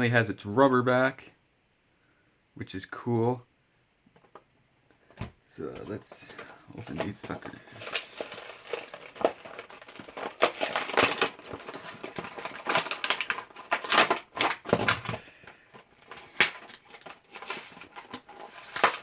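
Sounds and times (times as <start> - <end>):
toy packaging crinkling: 5.8 - 19.0.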